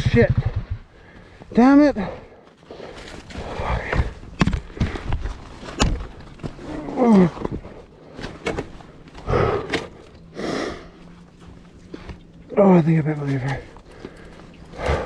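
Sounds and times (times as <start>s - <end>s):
heavy breathy exhales: 9.2s - 11.0s, 14.0s - 15.0s.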